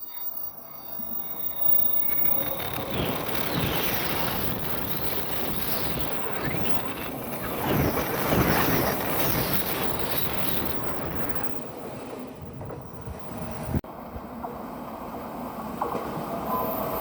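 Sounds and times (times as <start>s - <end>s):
electric train passing: 0.0s - 17.0s
wind buffeting microphone: 2.3s - 14.4s.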